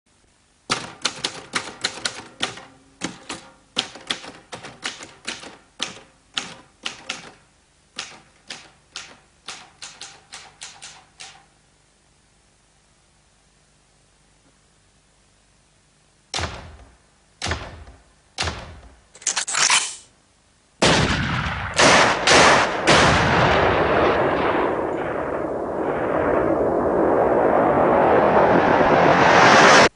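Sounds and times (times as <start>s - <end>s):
gunshots: 16.3s - 20.0s, 20.8s - 25.4s.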